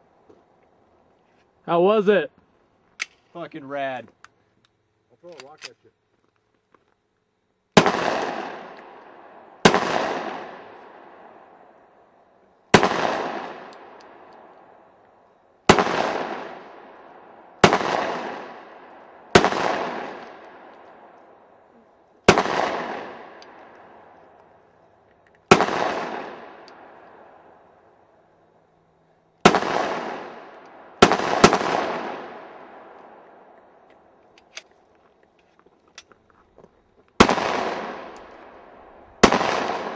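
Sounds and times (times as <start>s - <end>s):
pistol shots with echo: 7.8s - 11.6s, 12.7s - 14.6s, 15.7s - 21.2s, 22.2s - 24.1s, 25.5s - 27.4s, 29.4s - 33.3s, 37.2s - 39.9s.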